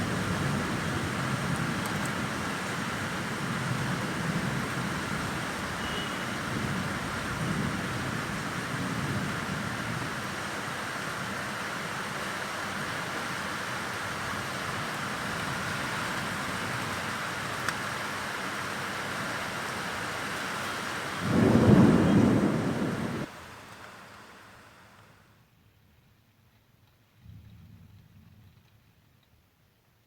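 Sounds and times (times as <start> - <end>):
heavy rain falling: 0.0 - 25.2
thunder rumble: 21.1 - 23.3.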